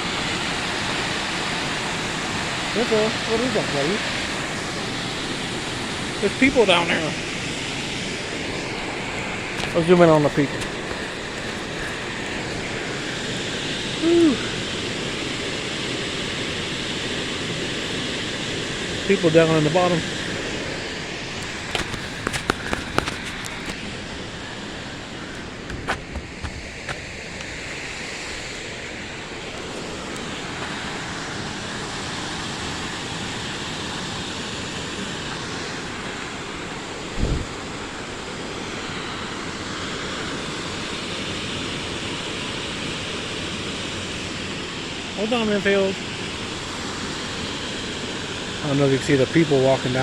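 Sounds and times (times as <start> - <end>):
waterfall rushing: 0.0 - 25.5.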